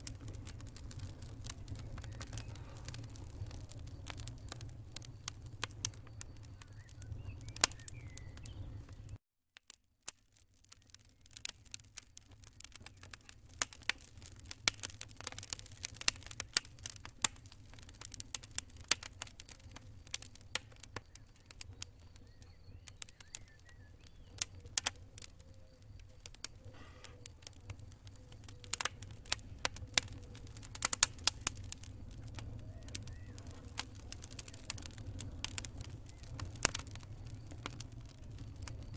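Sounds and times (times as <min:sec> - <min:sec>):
low steady rumble: 0:00.0 - 0:09.2
fire crackling and popping: 0:00.0 - 0:38.9.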